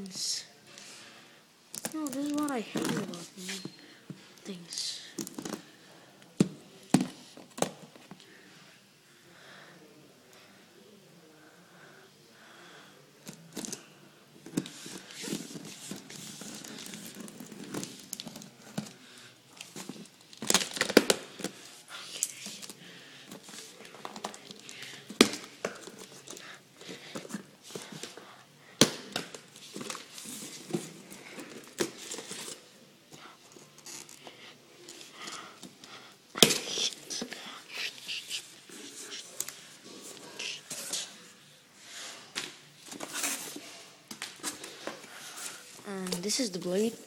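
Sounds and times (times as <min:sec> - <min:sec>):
packaging crinkling and tearing: 0:14.6 - 0:21.6.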